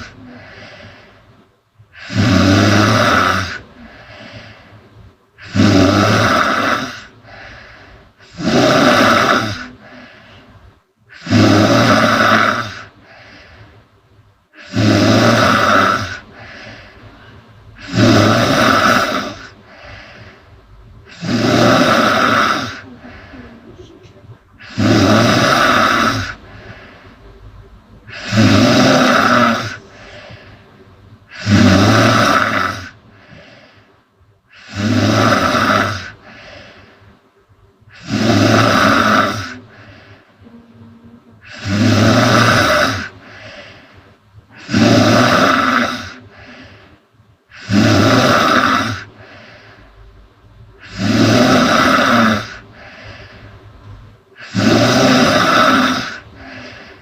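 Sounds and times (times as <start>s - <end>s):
quiet breathing: 0.0s - 57.0s
woman snoring loudly: 1.9s - 4.3s, 5.4s - 10.2s, 11.1s - 12.9s, 14.6s - 16.6s, 17.8s - 20.2s, 21.1s - 23.9s, 24.6s - 26.4s, 28.1s - 30.1s, 31.3s - 33.0s, 34.6s - 36.4s, 37.9s - 39.9s, 40.5s - 43.4s, 44.5s - 46.5s, 47.5s - 49.1s, 50.8s - 52.6s, 54.4s - 57.0s.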